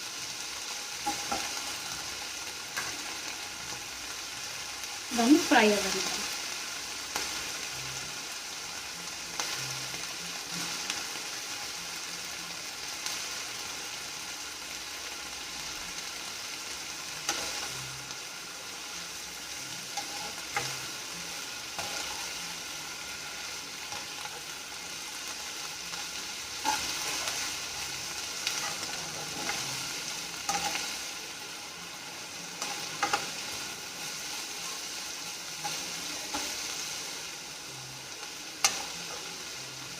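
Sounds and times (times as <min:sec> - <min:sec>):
masala sizzling in oil: 0:00.0 - 0:39.9
spoon scraping a pan: 0:19.9 - 0:20.9, 0:26.6 - 0:27.6, 0:28.4 - 0:30.9, 0:32.6 - 0:33.6.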